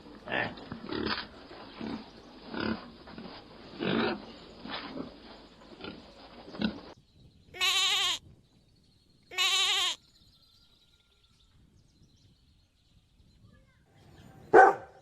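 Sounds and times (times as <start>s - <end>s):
sheep bleating: 7.6s - 8.2s, 9.3s - 10.0s.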